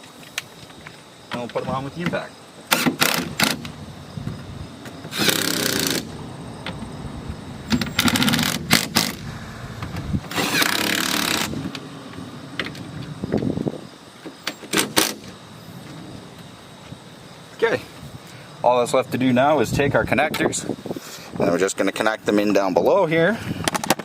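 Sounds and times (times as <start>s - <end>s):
impact wrench hammering: 5.1s - 6.2s, 10.3s - 11.7s
sharp clicks: 7.7s - 13.4s.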